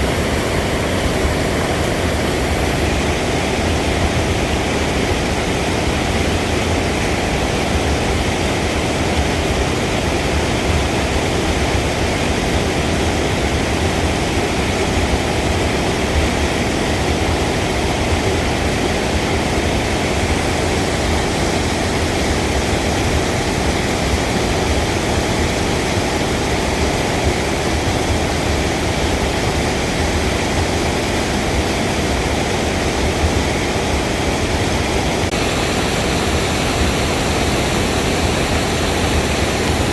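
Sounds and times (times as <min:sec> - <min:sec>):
waterfall roaring: 0:00.0 - 0:39.9.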